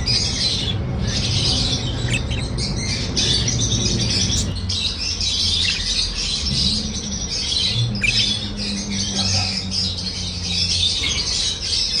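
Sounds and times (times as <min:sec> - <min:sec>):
pet birds chirping and squawking: 0:00.0 - 0:12.0.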